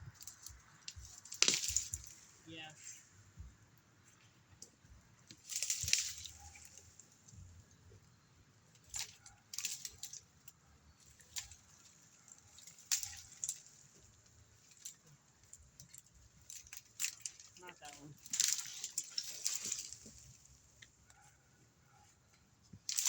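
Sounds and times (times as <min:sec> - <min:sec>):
rustling and crackling: 0:00.0 - 0:23.0.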